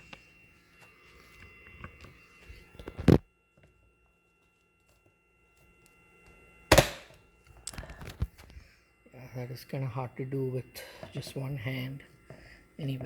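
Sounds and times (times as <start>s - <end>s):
loud plastic clunks: 6.7s - 7.1s.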